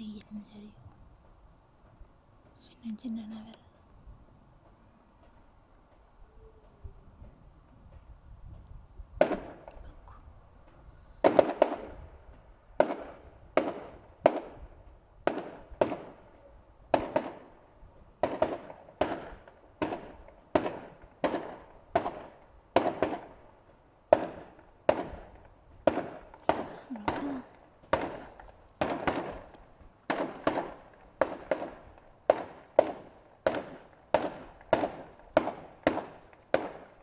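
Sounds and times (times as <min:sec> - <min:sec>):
fireworks bangs with echo: 0:09.2 - 0:09.7, 0:11.2 - 0:17.6, 0:18.2 - 0:23.4, 0:24.1 - 0:37.0.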